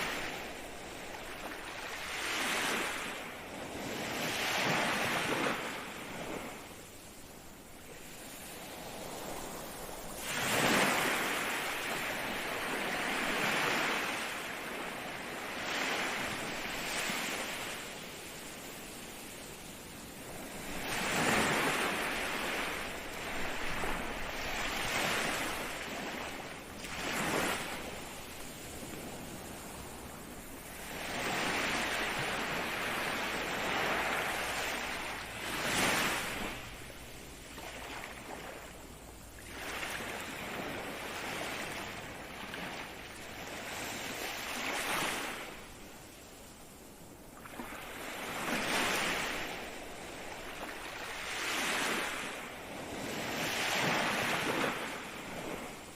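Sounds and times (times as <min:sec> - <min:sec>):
ocean waves breaking: 0:00.0 - 0:46.1, 0:46.8 - 0:55.9
waves crashing: 0:00.0 - 0:55.9.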